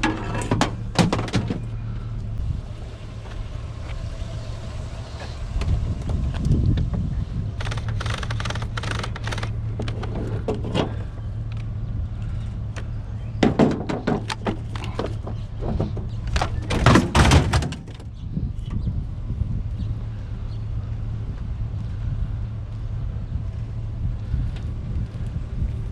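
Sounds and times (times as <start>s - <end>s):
scrap metal clanking: 0.0s - 1.7s
steady low hum: 0.0s - 25.9s.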